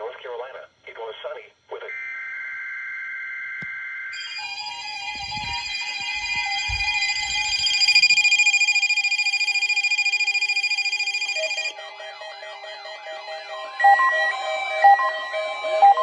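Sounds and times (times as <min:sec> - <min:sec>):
low beeping notes: 0:04.2 - 0:16.0
shrill pulsing alert tone: 0:04.2 - 0:16.0
low thumps: 0:05.2 - 0:07.7.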